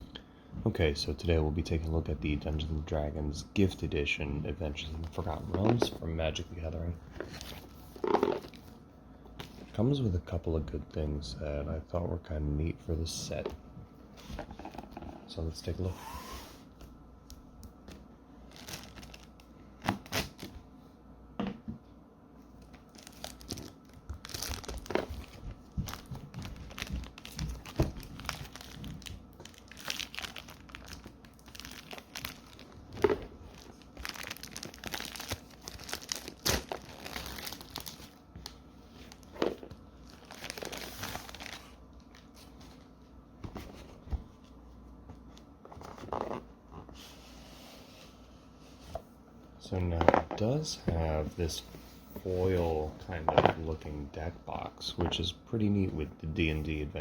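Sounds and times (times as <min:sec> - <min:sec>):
plastic wrapping tearing and crinkling: 0:18.4 - 0:20.5, 0:22.9 - 0:38.2, 0:39.0 - 0:42.2.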